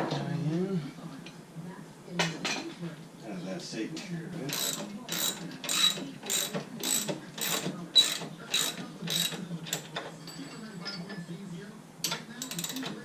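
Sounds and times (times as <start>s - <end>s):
socket ratchet clicking: 4.5s - 9.9s.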